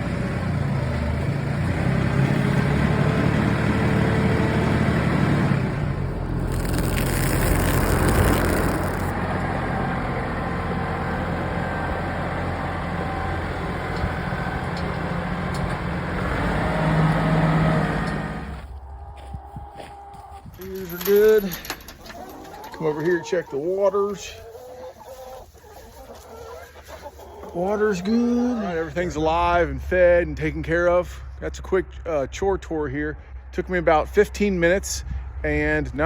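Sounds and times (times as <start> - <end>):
vehicle engine running: 0.0 - 18.8.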